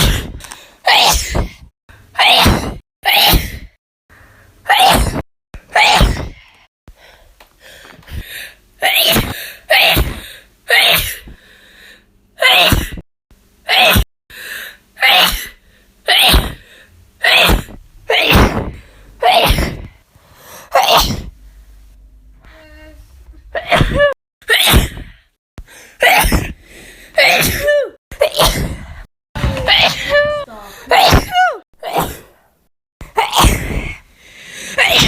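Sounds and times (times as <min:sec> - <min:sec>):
woman sneezing: 0:08.8 - 0:11.3, 0:12.4 - 0:13.0, 0:15.0 - 0:16.6, 0:17.2 - 0:19.8, 0:20.7 - 0:21.3, 0:26.0 - 0:26.5, 0:27.2 - 0:28.7, 0:29.6 - 0:32.3, 0:34.8 - 0:35.0.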